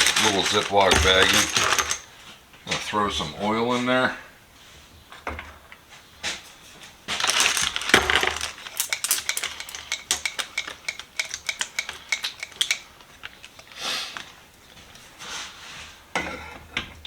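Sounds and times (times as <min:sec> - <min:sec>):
steel sockets clinking in bag: 0:00.0 - 0:02.1, 0:07.1 - 0:14.3
plastic bag rustling: 0:00.0 - 0:02.2, 0:07.1 - 0:15.7.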